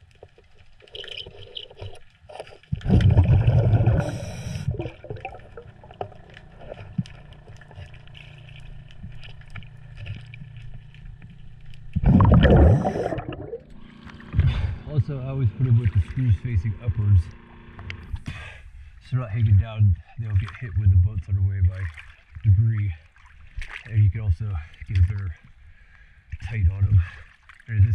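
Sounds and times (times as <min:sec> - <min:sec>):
faint clicks and scrapes: 0:00.0 - 0:03.1, 0:04.0 - 0:12.0
diver's bubbles gurgling: 0:02.7 - 0:15.0
steady low hum: 0:02.8 - 0:23.0.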